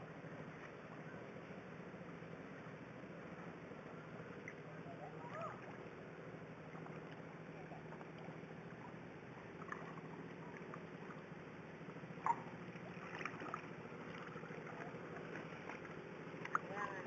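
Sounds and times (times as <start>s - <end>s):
steady low hum: 0.0s - 17.0s
water trickling and splashing: 3.5s - 17.0s
sharp drip-like splashes: 6.6s - 17.0s.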